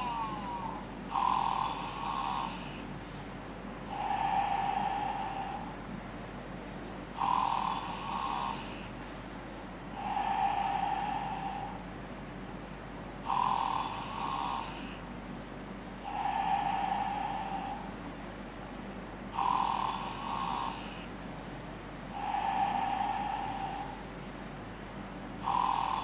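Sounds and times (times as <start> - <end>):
toy snoring: 0.0 - 2.9, 3.9 - 5.8, 7.1 - 9.0, 9.9 - 11.8, 13.2 - 15.0, 16.0 - 18.0, 19.3 - 21.2, 22.1 - 24.1, 25.4 - 26.0.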